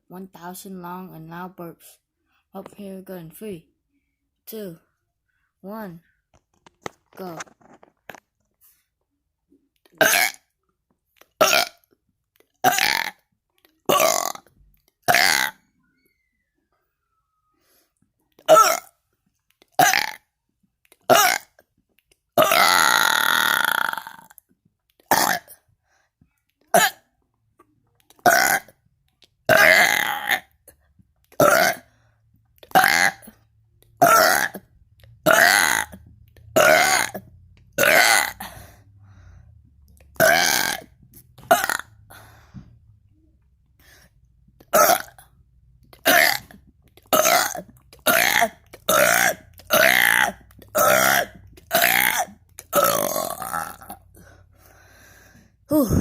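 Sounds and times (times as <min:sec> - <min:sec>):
person burping: 0:09.9 - 0:10.5, 0:11.3 - 0:11.9, 0:12.6 - 0:15.6, 0:18.4 - 0:19.0, 0:19.7 - 0:20.3, 0:21.0 - 0:21.6, 0:22.4 - 0:24.4, 0:25.0 - 0:25.6, 0:26.7 - 0:27.1, 0:28.2 - 0:28.8, 0:29.5 - 0:30.6, 0:31.4 - 0:31.9, 0:32.7 - 0:33.4, 0:34.0 - 0:38.7, 0:40.1 - 0:42.3, 0:44.6 - 0:45.3, 0:46.0 - 0:54.2, 0:55.7 - 0:56.0.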